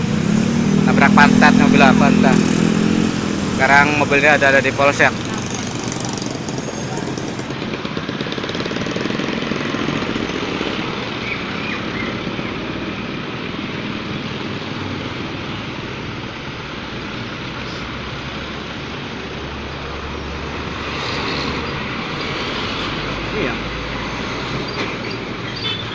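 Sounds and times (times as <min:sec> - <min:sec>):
deep engine rumble: 0:00.0 - 0:07.7
vehicle engine running: 0:00.0 - 0:11.2
road noise: 0:00.0 - 0:25.9.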